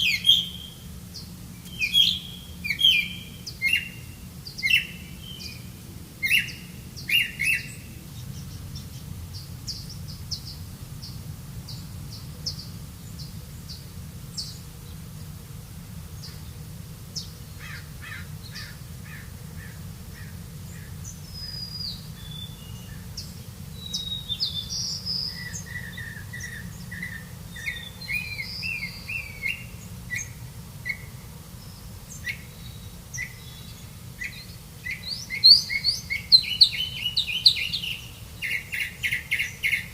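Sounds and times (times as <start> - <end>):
songbirds chirping: 0.0 - 39.9.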